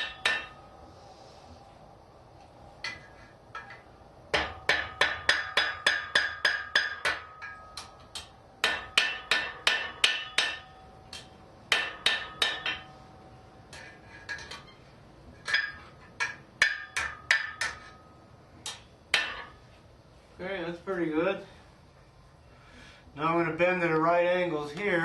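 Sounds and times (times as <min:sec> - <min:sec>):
hammer striking steel on anvil: 0:00.0 - 0:00.7, 0:03.6 - 0:13.1, 0:15.4 - 0:19.6.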